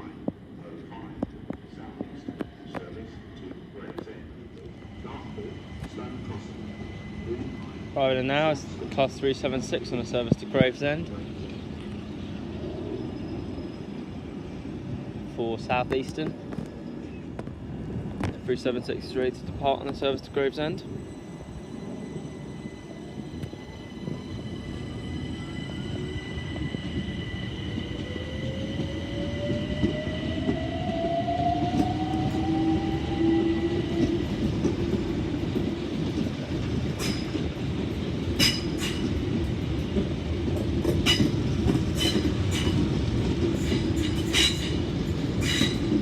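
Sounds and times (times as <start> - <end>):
train wheels clicking over rail joints: 33.9 - 46.0.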